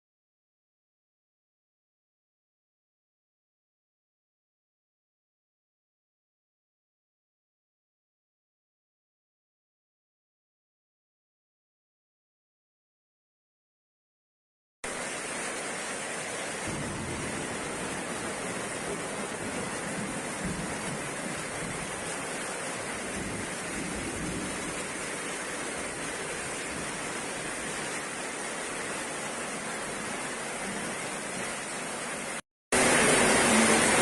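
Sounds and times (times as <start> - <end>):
heavy rain hissing: 14.8 - 34.0.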